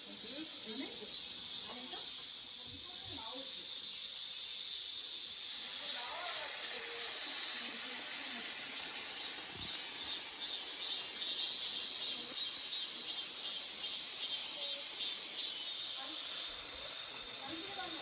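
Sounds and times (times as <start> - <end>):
constant high hiss: 0.0 - 18.0
insects chirping: 0.0 - 18.0.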